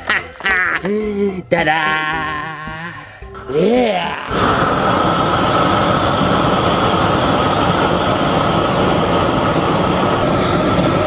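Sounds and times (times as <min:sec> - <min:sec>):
loud mechanical rumble: 0:04.3 - 0:11.0
constant high whine: 0:04.4 - 0:11.0.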